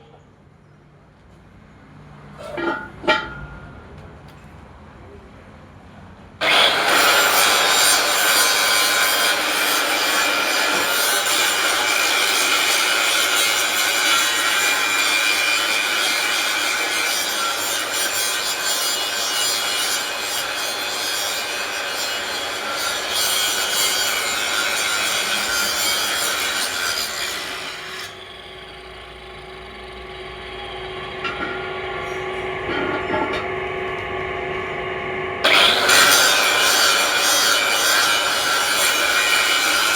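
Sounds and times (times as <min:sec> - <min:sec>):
power tool grinding metal: 0:06.4 - 0:32.4, 0:35.4 - 0:39.9.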